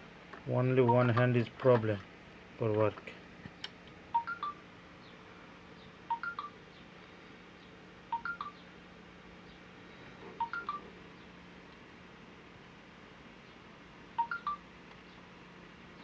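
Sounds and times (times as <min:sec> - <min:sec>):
quick electronic beeps: 0:04.2 - 0:04.6, 0:08.2 - 0:08.6, 0:10.4 - 0:10.8.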